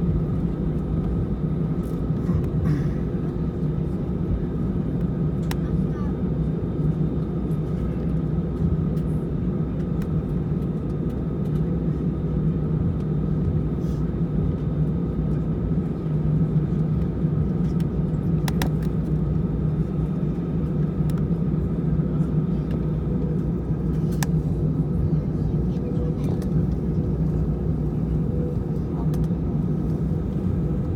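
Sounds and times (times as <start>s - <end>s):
jet engines rumbling: 0.0s - 30.9s.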